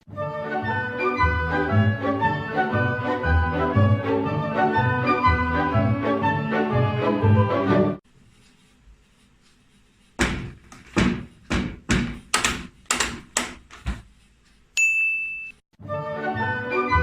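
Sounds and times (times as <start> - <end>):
heavy thuds: 10.2 - 14.2.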